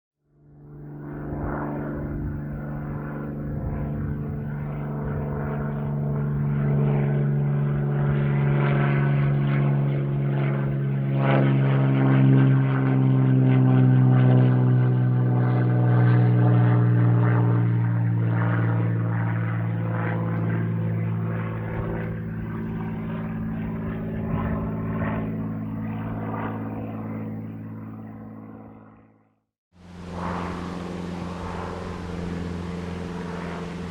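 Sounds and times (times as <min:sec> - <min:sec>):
propeller airplane engine drone: 0:00.2 - 0:33.9.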